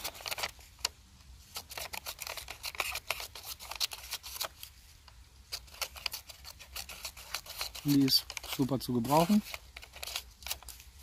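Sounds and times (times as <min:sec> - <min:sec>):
scissors snipping paper: 0:01.5 - 0:04.6, 0:05.5 - 0:11.0.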